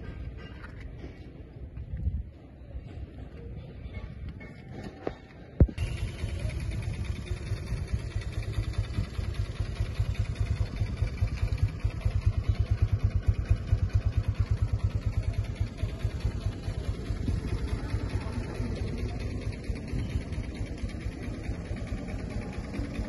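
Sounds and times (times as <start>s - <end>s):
motorcycle engine idling: 5.6s - 23.0s.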